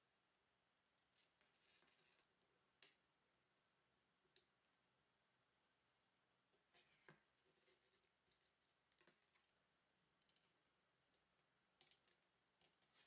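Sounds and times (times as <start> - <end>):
small clicks and taps: 10.2 - 13.0.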